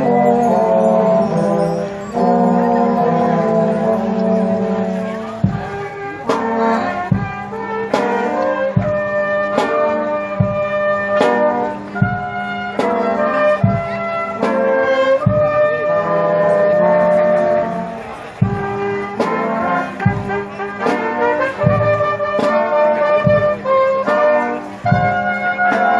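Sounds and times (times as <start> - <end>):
brass chords: 0.0 - 25.9
bass drum beats: 5.3 - 10.8, 11.9 - 12.6, 15.2 - 15.9, 18.4 - 22.6, 23.2 - 23.8, 24.8 - 25.5.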